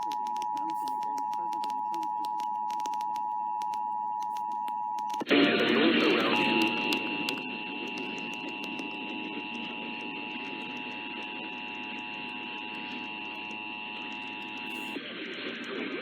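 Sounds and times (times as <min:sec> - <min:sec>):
radio hiss: 0:05.1 - 0:16.0.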